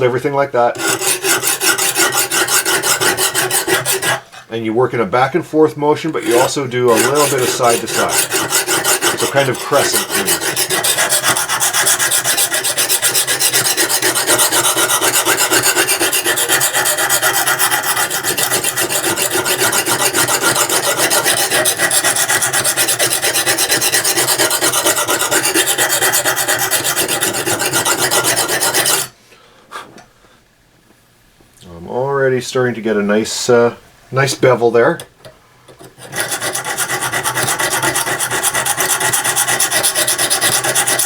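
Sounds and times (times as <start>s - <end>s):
sharpening hone rasping on steel: 0.8s - 4.2s, 6.2s - 29.1s, 35.8s - 41.0s.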